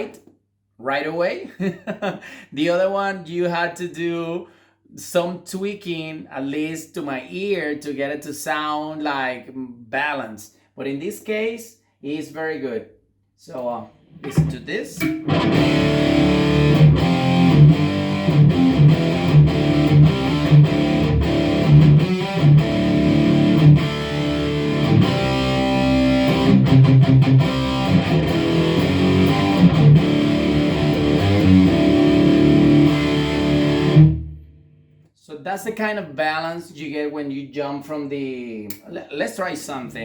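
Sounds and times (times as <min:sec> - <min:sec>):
distorted electric guitar riffing: 0:14.1 - 0:34.5.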